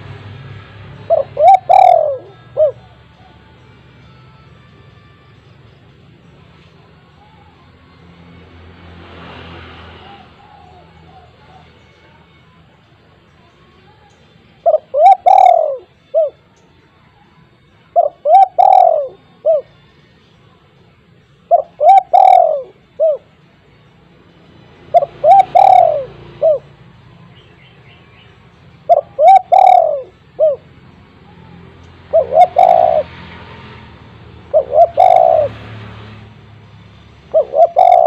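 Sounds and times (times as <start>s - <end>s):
dove cooing: 1.0s - 3.5s, 9.9s - 11.8s, 14.6s - 16.4s, 17.9s - 19.8s, 21.5s - 23.3s, 24.9s - 26.8s, 28.8s - 33.4s, 34.4s - 35.8s, 37.3s - 38.0s.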